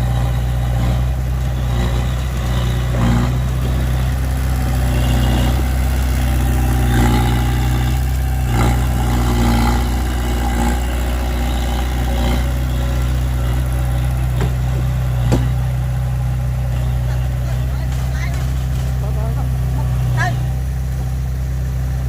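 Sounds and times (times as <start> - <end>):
diesel engine humming: 0.0 - 22.0
sharp knock: 15.3 - 15.5.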